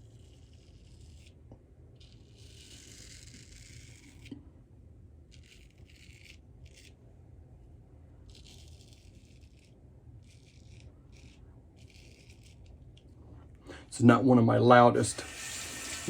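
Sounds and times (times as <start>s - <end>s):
straight razor scraping whiskers: 8.3s - 13.0s.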